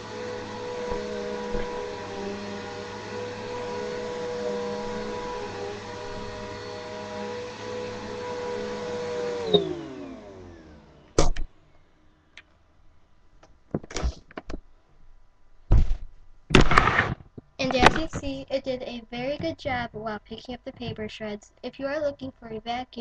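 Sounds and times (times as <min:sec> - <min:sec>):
vacuum cleaner motor whine: 0:00.0 - 0:12.1.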